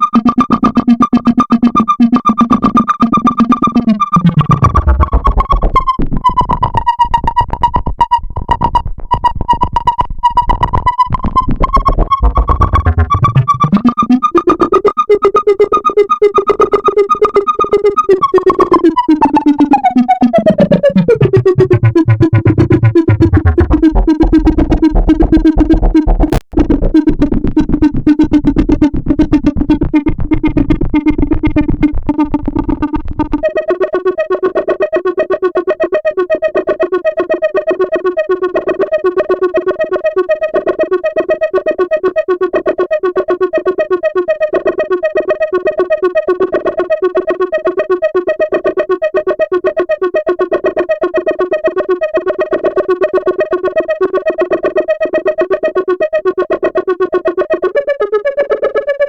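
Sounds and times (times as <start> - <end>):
synthesizer pulsing tone with sliding pitch: 0.0 - 8.2, 9.5 - 15.0, 15.8 - 34.6.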